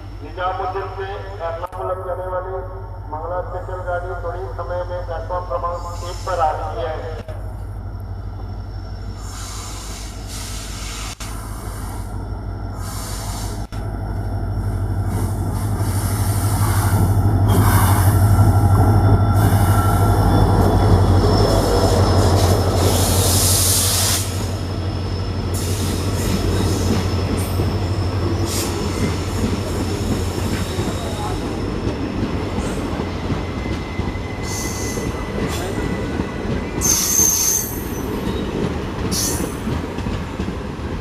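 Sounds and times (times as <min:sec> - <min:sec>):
diesel locomotive engine drone: 0:00.0 - 0:41.0
train wheels rolling and squealing: 0:07.4 - 0:41.0.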